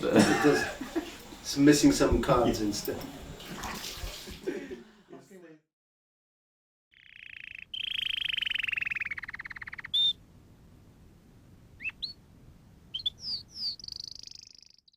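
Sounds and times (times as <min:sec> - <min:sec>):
canary singing: 0:06.9 - 0:10.2, 0:11.8 - 0:12.2, 0:12.9 - 0:14.9.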